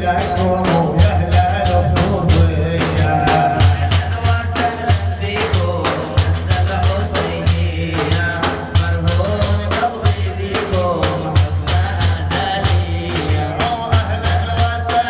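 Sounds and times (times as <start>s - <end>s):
devotional praise song music: 0.0s - 15.0s
hand percussion beat: 0.0s - 15.0s
pulsing bass: 0.2s - 4.5s.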